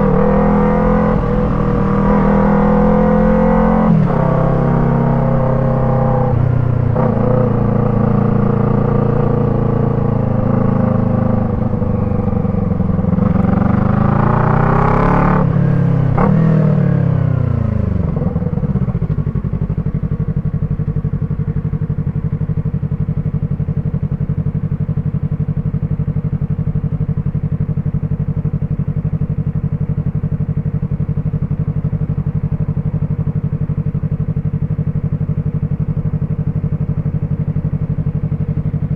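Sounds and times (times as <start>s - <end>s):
motorcycle engine revving and idling: 0.0s - 38.9s.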